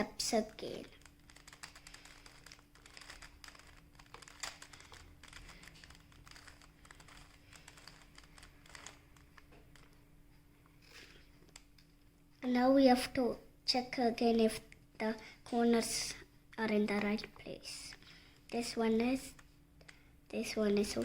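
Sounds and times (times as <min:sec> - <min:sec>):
faint steady hum: 0:00.0 - 0:21.0
puzzle cube plastic clicking: 0:00.8 - 0:10.0.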